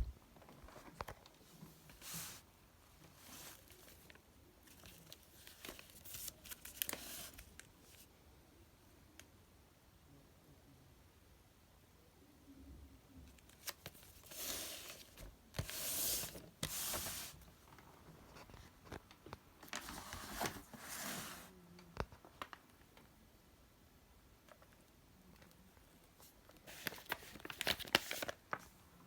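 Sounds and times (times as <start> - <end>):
packaging rustling and crinkling: 3.0 - 8.0, 13.4 - 21.5, 26.4 - 28.8.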